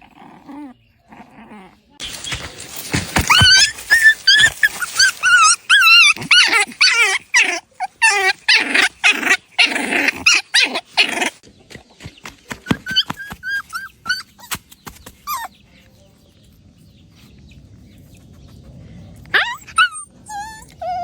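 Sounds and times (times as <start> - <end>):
puppy growling: 0.0 - 11.4, 18.4 - 21.0
puppy whining and yelping: 2.4 - 11.4, 12.7 - 15.6, 19.3 - 21.0.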